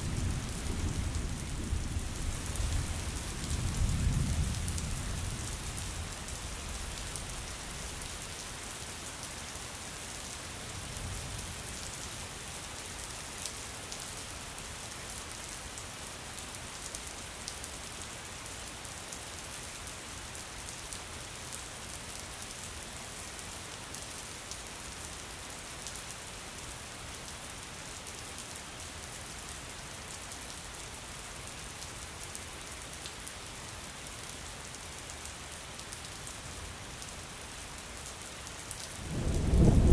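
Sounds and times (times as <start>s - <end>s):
steady rain falling: 0.0s - 39.9s
low thunder rumble: 39.0s - 39.9s.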